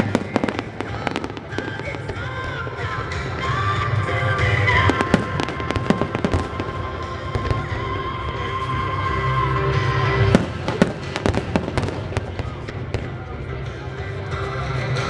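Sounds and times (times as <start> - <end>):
fireworks cracking and banging: 0.0 - 8.4, 10.2 - 13.4.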